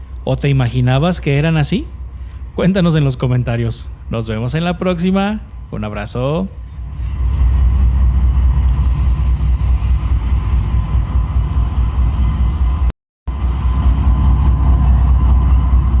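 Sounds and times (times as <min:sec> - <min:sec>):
train rumbling: 0:00.0 - 0:16.0
high hiss: 0:08.7 - 0:11.3.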